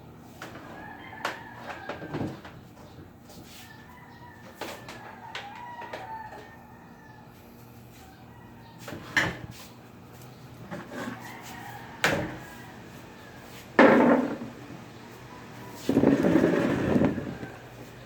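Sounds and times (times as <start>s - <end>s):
rubbing scraping noise: 15.6s - 18.0s.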